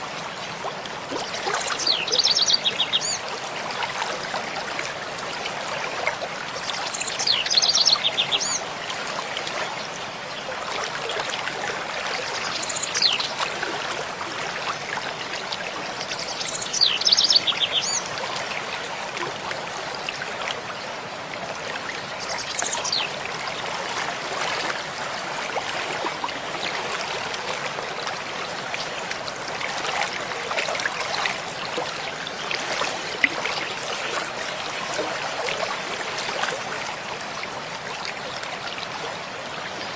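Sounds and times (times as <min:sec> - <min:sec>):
stream babbling: 0:00.0 - 0:39.9.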